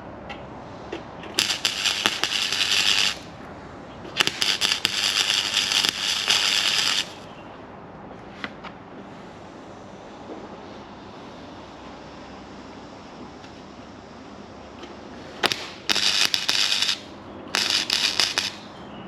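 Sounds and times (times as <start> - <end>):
welding arc crackle: 1.4 - 3.3, 4.2 - 7.2, 15.4 - 18.7.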